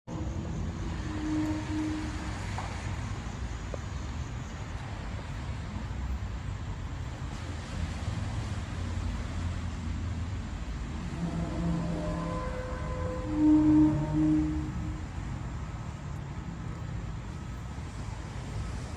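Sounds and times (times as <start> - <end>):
metallic trumpet-like tones: 0.1 - 2.9, 10.9 - 15.9
faint drawn-out tone: 0.1 - 3.4, 10.6 - 18.8
low rumble: 9.7 - 18.0.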